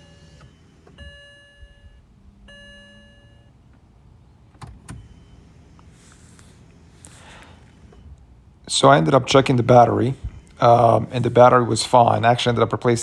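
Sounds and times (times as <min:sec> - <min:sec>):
dashboard chime: 0:01.0 - 0:03.5.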